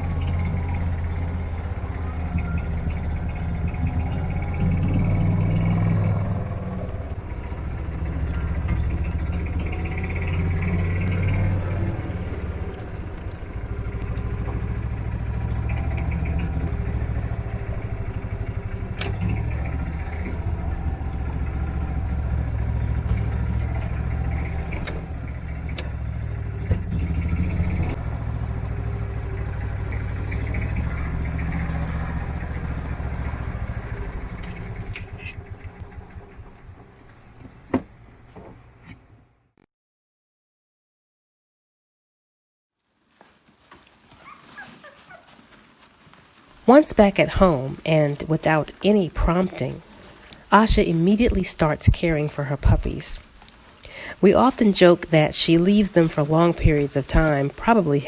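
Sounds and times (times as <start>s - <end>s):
car engine and road rumble: 0.0s - 39.6s, 42.8s - 58.0s.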